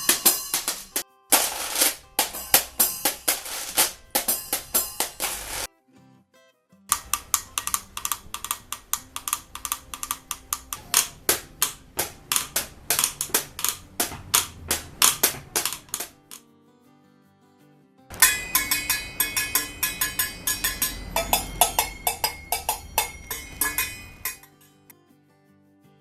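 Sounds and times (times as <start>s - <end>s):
percussion instrument sharp hits: 0.0s - 5.7s, 6.9s - 16.4s, 18.1s - 24.6s.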